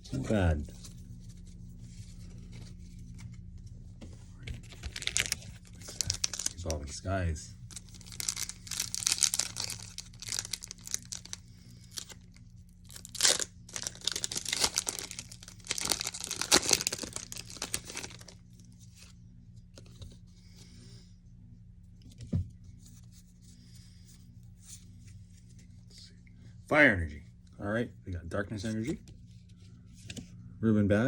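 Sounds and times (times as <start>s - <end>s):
cards rustling: 4.4s - 7.0s, 7.6s - 18.4s
foil crinkling: 4.6s - 6.9s, 7.7s - 18.4s
foil wrapper tearing: 4.7s - 6.7s, 7.7s - 18.4s.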